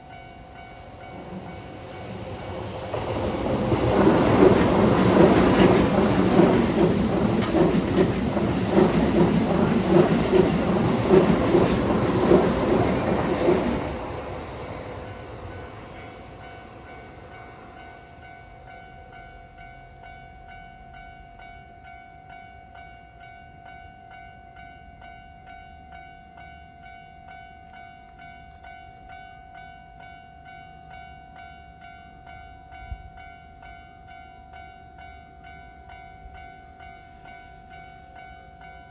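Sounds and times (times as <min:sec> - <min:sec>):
crossing warning bell ringing: 0:00.0 - 0:38.9
electric train clattering over crossing: 0:00.1 - 0:19.2.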